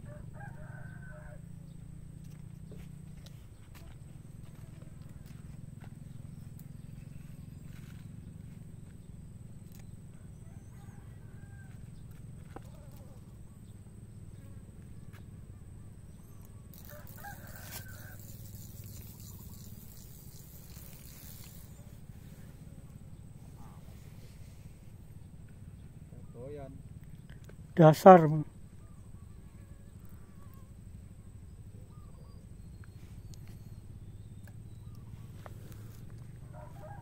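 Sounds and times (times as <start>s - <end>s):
small chirps: 16.2s - 22.0s, 32.7s - 36.3s
rustling hiss: 16.8s - 22.6s.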